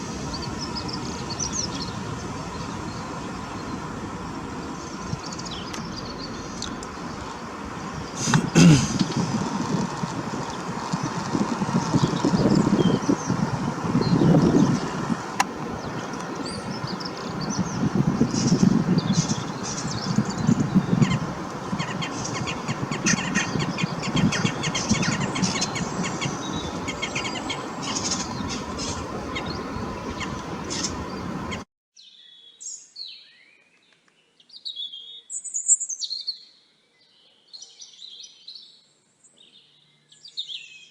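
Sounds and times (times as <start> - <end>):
wind rumble on microphone: 0.0 - 31.7
small birds chirping: 0.0 - 32.3.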